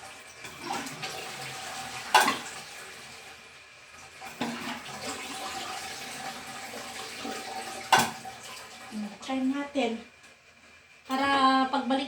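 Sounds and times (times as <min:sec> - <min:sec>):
water refilling toilet cistern: 0:00.0 - 0:11.2.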